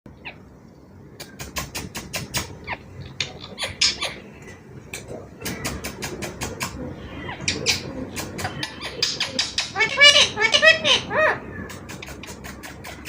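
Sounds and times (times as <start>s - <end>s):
parrot squeaks and chirps: 2.2s - 4.2s.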